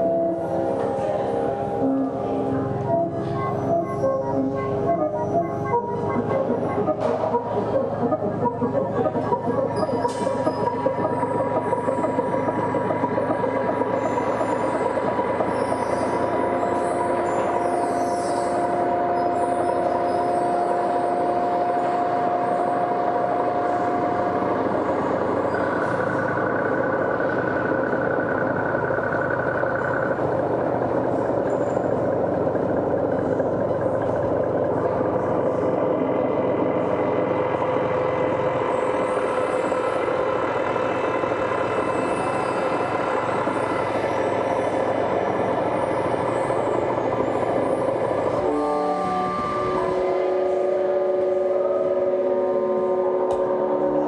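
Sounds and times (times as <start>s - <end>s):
rumbling noise drone: 3.8s - 54.0s.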